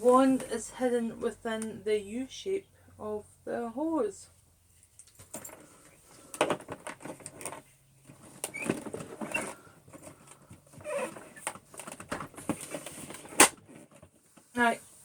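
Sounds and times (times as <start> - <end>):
rustling: 4.6 - 15.0
clicks and knocks of handling: 6.3 - 14.5.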